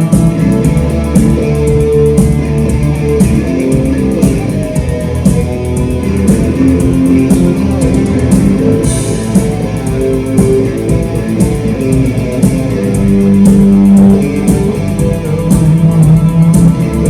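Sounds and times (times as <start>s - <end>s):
cymbal or drum strokes: 0.0s - 17.0s
electric guitar melody: 0.0s - 17.0s.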